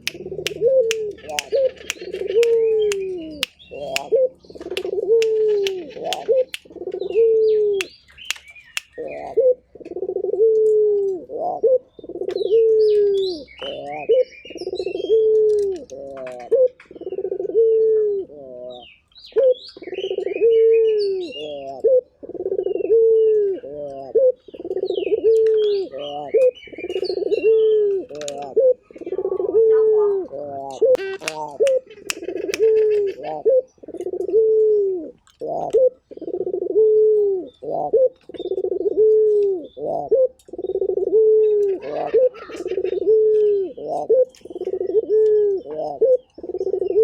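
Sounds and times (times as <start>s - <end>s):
sharp clicks: 0.0s - 4.1s, 4.7s - 6.7s, 7.8s - 9.0s, 31.0s - 32.7s
dove cooing: 0.0s - 47.0s
small birds chirping: 0.0s - 47.0s.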